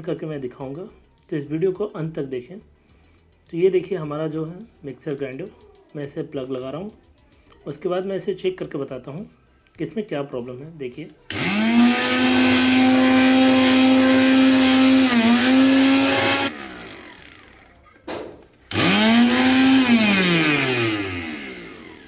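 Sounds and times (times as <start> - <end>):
mixer grinder motor whining: 11.3 - 22.0.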